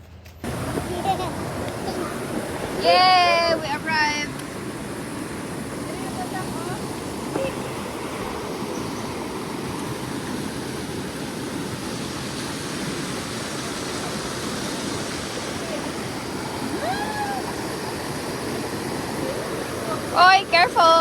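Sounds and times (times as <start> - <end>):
river water rushing: 0.4 - 21.0
call rising and falling in pitch: 16.7 - 17.7.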